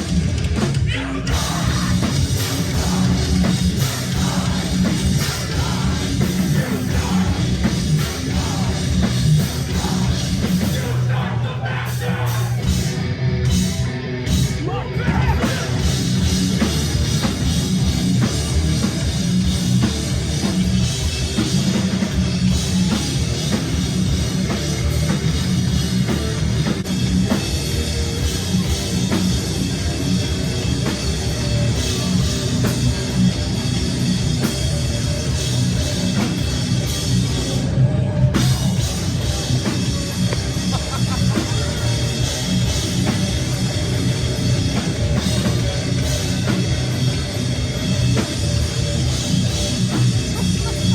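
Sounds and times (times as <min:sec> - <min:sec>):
heavy rock band playing live: 0:00.0 - 0:50.9.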